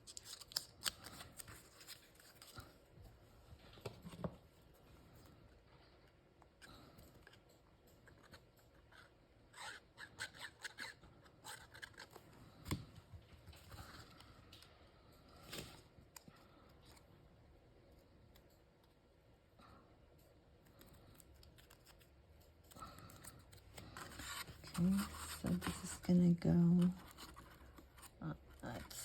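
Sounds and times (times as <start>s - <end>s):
small paper snips and clicks: 0.0s - 2.5s, 20.6s - 25.9s.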